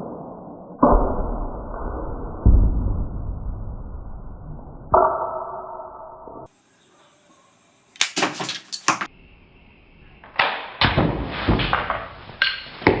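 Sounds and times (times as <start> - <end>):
crossbow sharp snaps: 7.9 - 8.3.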